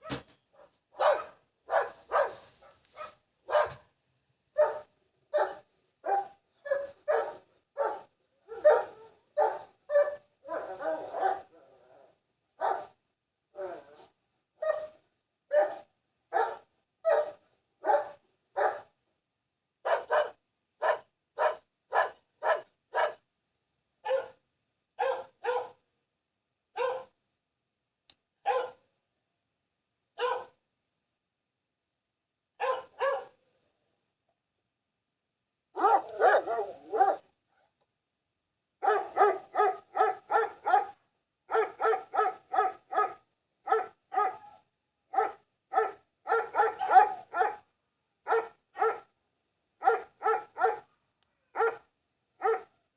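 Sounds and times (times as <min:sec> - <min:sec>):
dog barking: 0:00.0 - 0:03.9, 0:04.6 - 0:11.6, 0:12.6 - 0:13.0, 0:14.6 - 0:18.9, 0:19.8 - 0:23.2, 0:24.0 - 0:24.4, 0:25.0 - 0:25.8, 0:26.8 - 0:27.2, 0:28.4 - 0:28.8, 0:30.2 - 0:30.6, 0:32.6 - 0:33.4, 0:35.8 - 0:37.3, 0:38.8 - 0:49.1, 0:49.8 - 0:50.9, 0:51.5 - 0:52.8.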